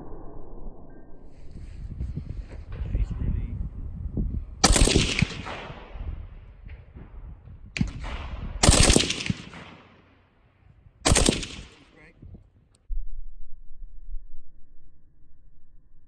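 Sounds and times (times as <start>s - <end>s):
suppressed rifle shots: 4.6s - 11.9s.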